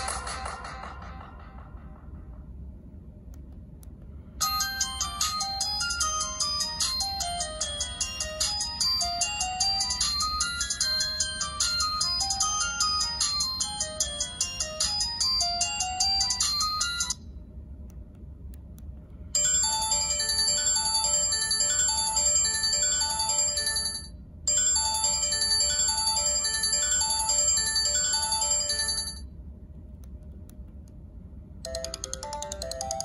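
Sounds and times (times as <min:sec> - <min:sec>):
ringtone melody of high notes: 0:04.4 - 0:17.2, 0:19.4 - 0:29.2, 0:31.7 - 0:33.0.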